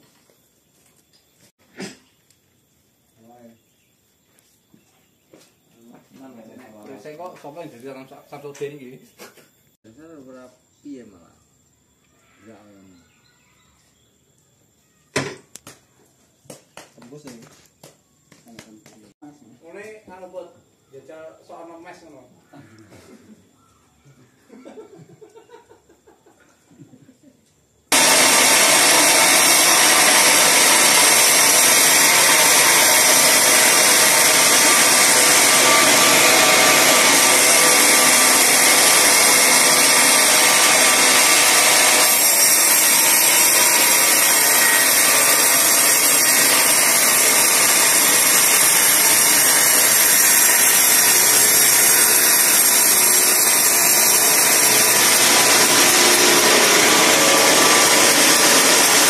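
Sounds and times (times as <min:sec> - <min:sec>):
band saw cutting log: 0:27.9 - 0:59.0.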